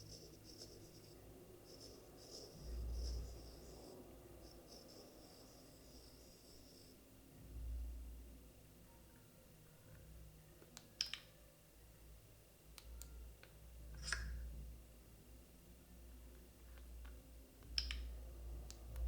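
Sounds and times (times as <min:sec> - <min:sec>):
stylus clicks: 0:10.7 - 0:11.3, 0:17.6 - 0:18.1.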